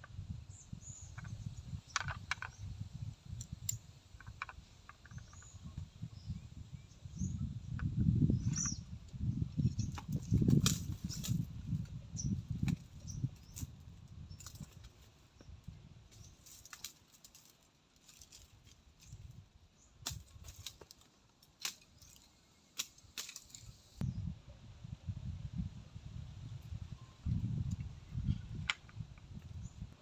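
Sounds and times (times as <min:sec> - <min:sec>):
wind buffeting microphone: 0:00.0 - 0:16.4, 0:23.8 - 0:30.0.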